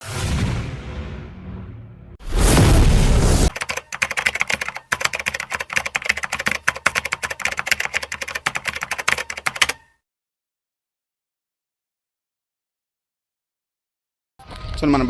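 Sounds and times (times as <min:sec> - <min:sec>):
keyboard typing clicks: 0:03.5 - 0:10.0.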